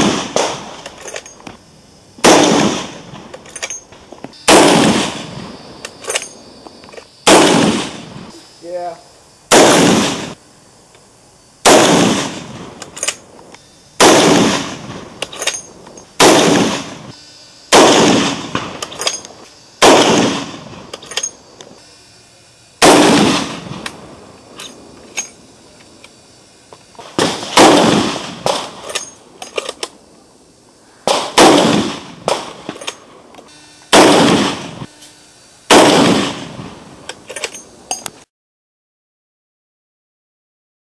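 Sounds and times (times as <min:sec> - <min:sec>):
fainter distant gunshots: 0:00.0 - 0:00.8, 0:02.2 - 0:03.3, 0:04.5 - 0:05.5, 0:07.3 - 0:08.3, 0:09.5 - 0:10.4, 0:11.6 - 0:12.8, 0:14.0 - 0:15.2, 0:16.2 - 0:17.1, 0:17.7 - 0:18.8, 0:19.8 - 0:20.9, 0:22.8 - 0:24.2, 0:27.0 - 0:28.9, 0:31.0 - 0:33.2, 0:33.9 - 0:34.9, 0:35.7 - 0:36.8
rifle shots echoing: 0:00.0 - 0:01.0, 0:02.2 - 0:06.2, 0:07.2 - 0:08.3, 0:09.5 - 0:10.4, 0:11.6 - 0:13.3, 0:14.0 - 0:17.1, 0:17.7 - 0:21.3, 0:22.8 - 0:24.9, 0:27.0 - 0:29.8, 0:31.0 - 0:33.2, 0:33.9 - 0:34.9, 0:35.7 - 0:36.8.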